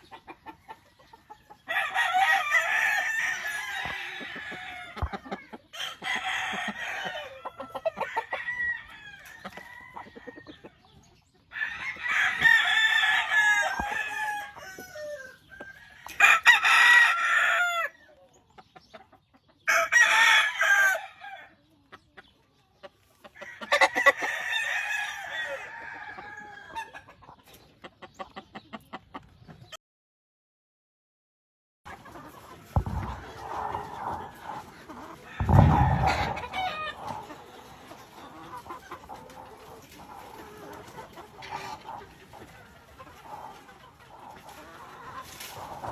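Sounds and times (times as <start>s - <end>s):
chickens clucking: 0.0s - 29.8s, 31.9s - 45.9s
roosters crowing: 1.6s - 10.8s, 11.5s - 18.0s, 19.7s - 21.6s, 23.4s - 27.0s, 32.7s - 45.9s
scratching: 32.7s - 41.8s.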